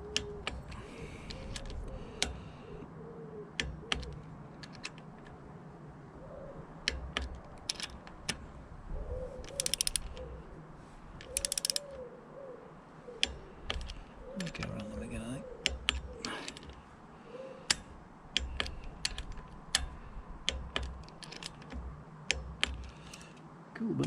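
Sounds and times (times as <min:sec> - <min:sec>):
socket wrench clicks and taps: 0:00.0 - 0:02.4, 0:03.6 - 0:05.3, 0:06.8 - 0:08.4, 0:09.5 - 0:10.3, 0:11.2 - 0:11.8, 0:13.2 - 0:14.8, 0:15.6 - 0:16.8, 0:17.7 - 0:23.4
rapid ratchet clicks: 0:09.5 - 0:10.3, 0:11.2 - 0:11.9.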